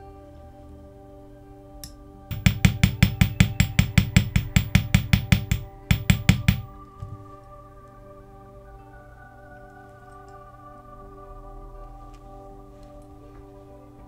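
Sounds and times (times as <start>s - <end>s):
soft background music: 0.0s - 14.0s
small hammer tapping metal: 2.3s - 6.8s.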